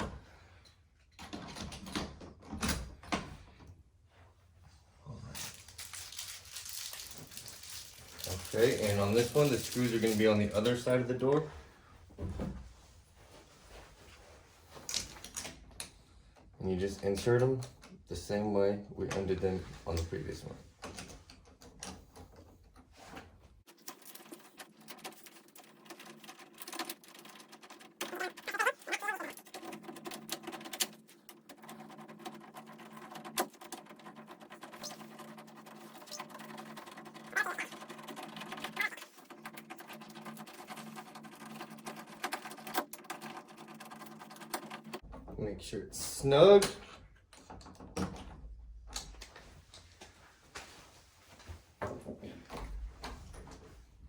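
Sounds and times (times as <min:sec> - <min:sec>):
rubbing rustle: 0:05.5 - 0:10.8.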